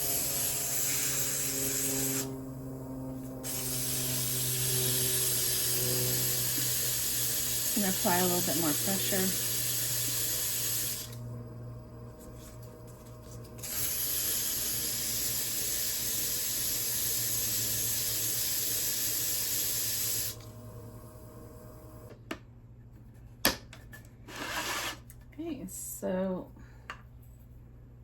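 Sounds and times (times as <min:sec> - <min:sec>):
low hum: 0:11.1 - 0:13.6
sanding pad grinding ceramic pot: 0:24.3 - 0:25.0.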